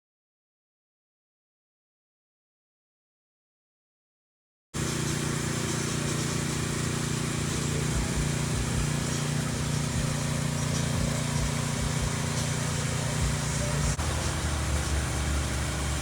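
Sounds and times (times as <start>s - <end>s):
small engine humming: 4.8s - 16.0s.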